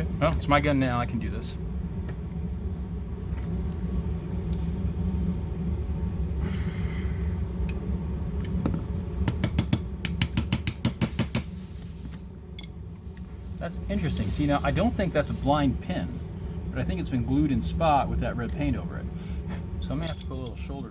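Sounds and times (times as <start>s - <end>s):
steady low hum: 0.0s - 20.9s
hammer tapping metal punch: 9.2s - 11.5s.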